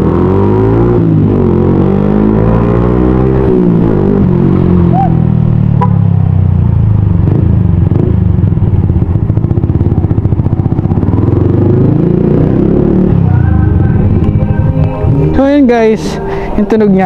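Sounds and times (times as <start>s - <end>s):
motorcycle engine running loud: 0.0s - 16.9s.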